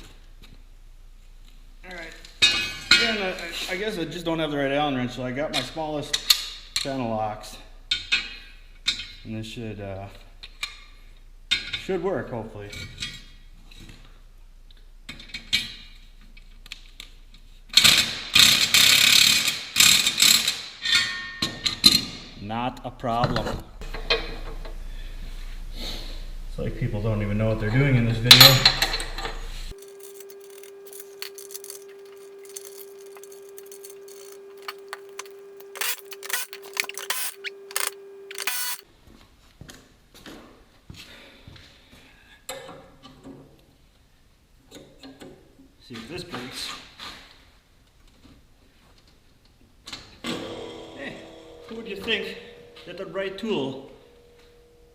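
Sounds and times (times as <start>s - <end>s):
metal tools clinking on metal: 29.7s - 38.8s
steady hum: 29.7s - 38.8s
metallic ratchet rattling: 29.8s - 38.8s.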